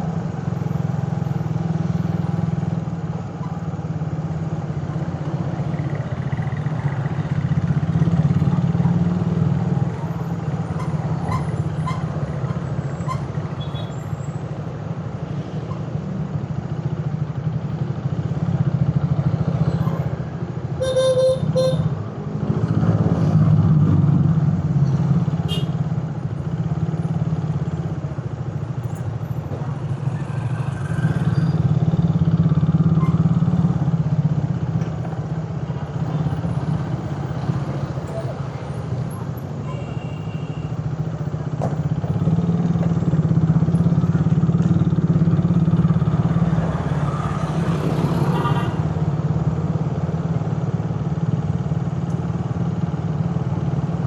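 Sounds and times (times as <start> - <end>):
vehicle horn: 20.8 - 21.9, 25.4 - 25.8.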